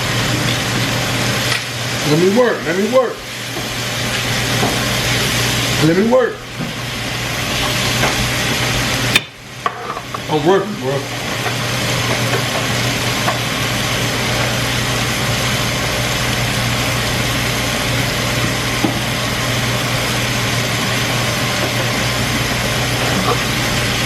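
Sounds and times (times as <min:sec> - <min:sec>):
kitchen appliance motor humming: 0:00.0 - 0:24.0.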